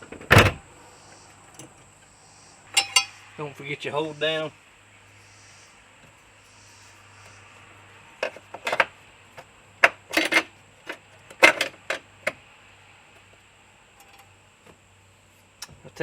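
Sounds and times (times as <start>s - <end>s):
metal bracket and bolt clinking: 2.7s - 3.3s, 9.8s - 12.0s.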